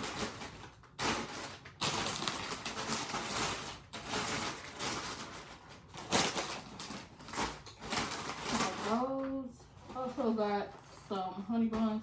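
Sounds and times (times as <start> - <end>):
snack packaging crinkling: 0.0 - 9.0.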